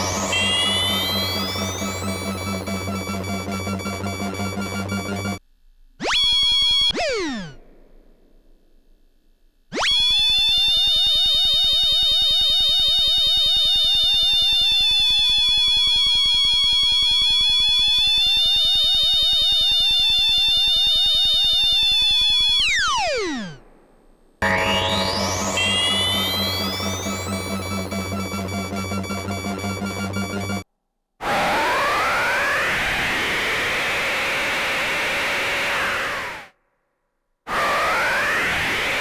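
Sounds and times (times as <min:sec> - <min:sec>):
rising synth sweep over low tones: 0:00.0 - 0:05.4, 0:24.4 - 0:30.6
warbling electronic synth tone: 0:00.0 - 0:05.4, 0:24.4 - 0:30.6.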